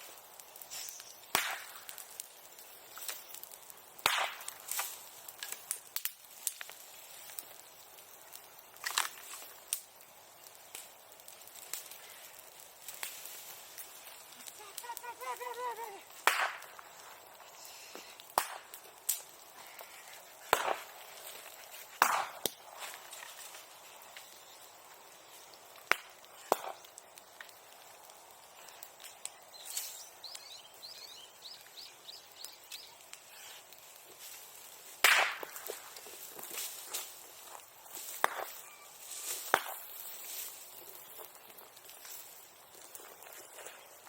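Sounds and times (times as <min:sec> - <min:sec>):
bonfire crackling: 0:00.0 - 0:44.0
sharp pops from fire: 0:00.0 - 0:44.0.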